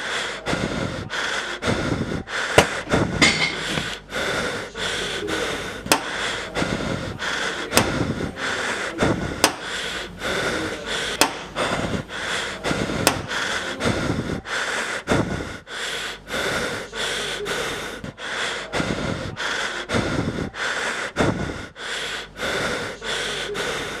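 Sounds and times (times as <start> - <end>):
creature breathing and snorting: 0.0 - 24.0
sharp clicks: 5.8 - 6.2, 11.2 - 11.6.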